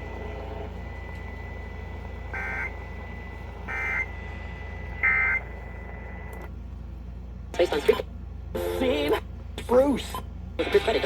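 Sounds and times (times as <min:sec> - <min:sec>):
low hum: 0:00.0 - 0:09.6.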